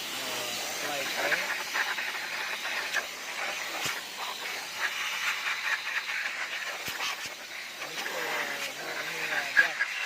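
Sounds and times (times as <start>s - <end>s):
steady hiss: 0.0s - 10.0s.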